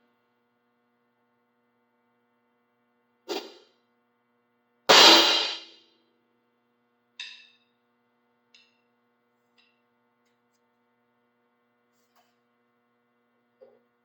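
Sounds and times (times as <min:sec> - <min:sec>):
faint electrical hum: 0:00.0 - 0:14.0
cymbal struck with stick: 0:04.9 - 0:05.8.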